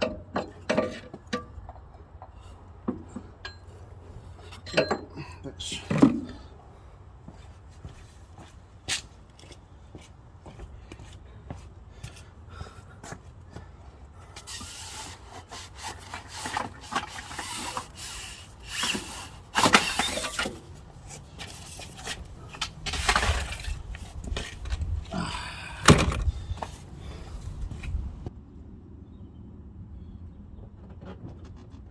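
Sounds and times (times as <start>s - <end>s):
hard parts clicking and knocking: 0.0s - 6.4s, 15.8s - 28.3s
rubbing and scraping: 14.3s - 25.2s.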